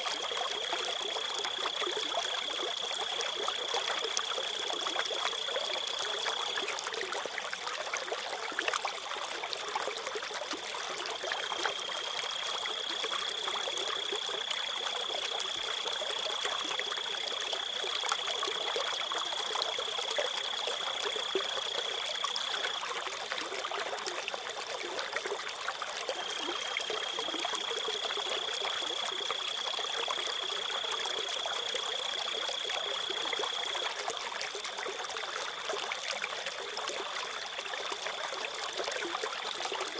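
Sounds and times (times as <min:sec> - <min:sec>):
water trickling: 0:00.0 - 0:39.9
crickets trilling: 0:11.0 - 0:23.0, 0:26.1 - 0:34.2.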